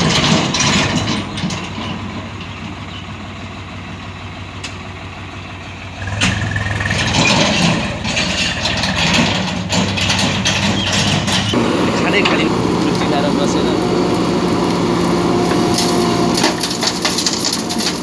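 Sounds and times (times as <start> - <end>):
diesel engines running: 0.0 - 18.0
metal knocks and clanks: 8.1 - 18.0.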